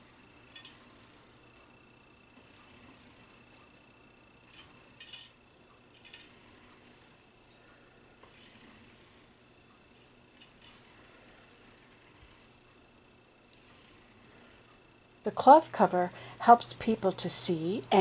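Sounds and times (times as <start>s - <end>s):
light metallic jingling: 0.0s - 15.3s
faint high whine: 0.0s - 18.0s.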